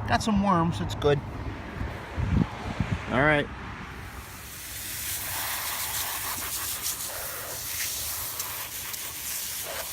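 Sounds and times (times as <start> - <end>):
steady hiss: 4.0 - 9.9.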